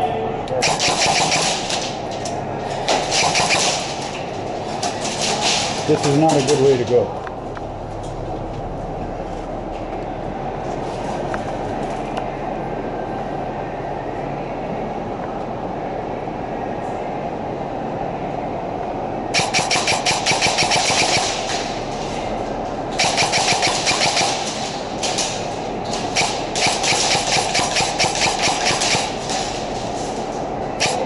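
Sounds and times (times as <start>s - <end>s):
steady hum: 0.0s - 31.0s
airsoft guns firing bursts: 0.6s - 2.0s, 3.1s - 4.0s, 19.4s - 21.8s, 23.0s - 25.3s, 25.9s - 29.5s, 30.8s - 31.0s.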